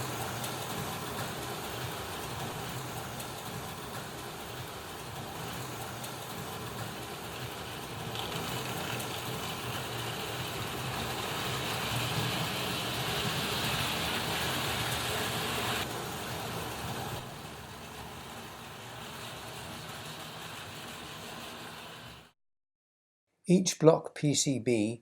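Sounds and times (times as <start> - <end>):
model train motors whirring: 0.0 - 22.3.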